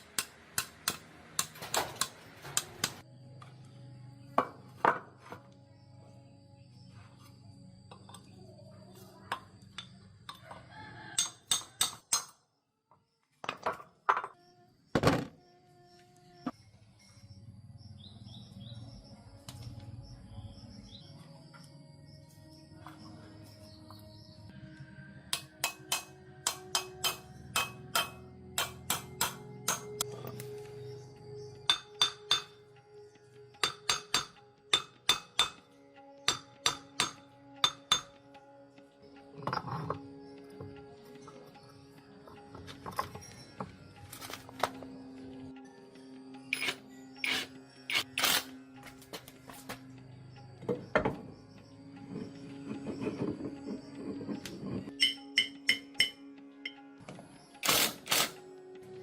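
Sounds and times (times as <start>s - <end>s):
background music: 0.0s - 12.4s, 15.8s - 59.0s
hammer tapping on metal: 11.2s - 12.4s, 25.4s - 30.0s, 31.7s - 32.6s, 33.6s - 35.6s, 36.3s - 38.2s, 54.9s - 56.2s.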